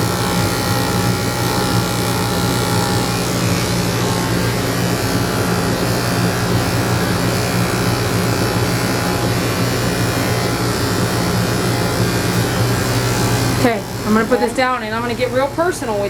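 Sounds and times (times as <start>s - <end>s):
electric clippers motor hum: 0.0s - 16.0s.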